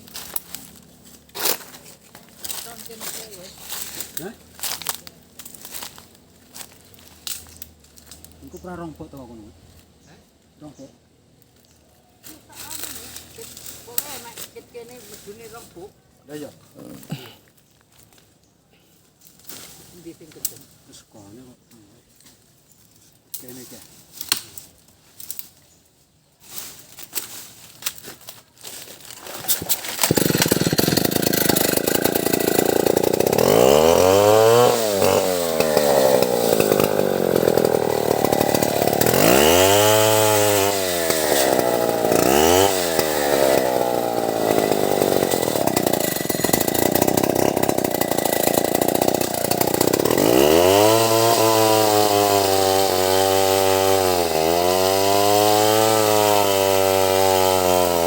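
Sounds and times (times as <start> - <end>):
chainsaw running at high revs: 29.5 - 58.0.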